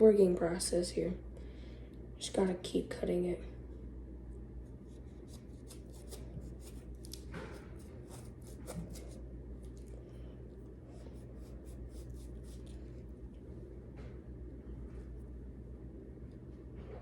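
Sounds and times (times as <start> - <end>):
knife scraping leather: 7.8 - 9.2.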